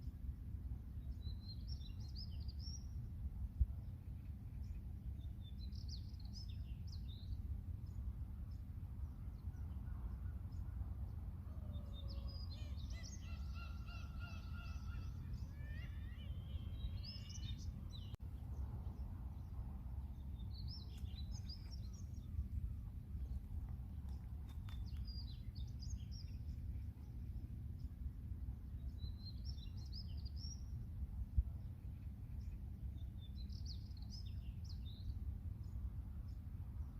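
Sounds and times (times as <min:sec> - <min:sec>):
steady low rumble: 0:00.0 - 0:11.8, 0:12.4 - 0:36.9
seagulls and birds calling: 0:11.6 - 0:18.0.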